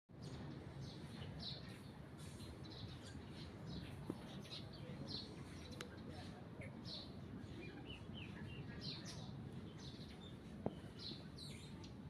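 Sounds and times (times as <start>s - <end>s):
birds chirping: 0.1s - 12.0s.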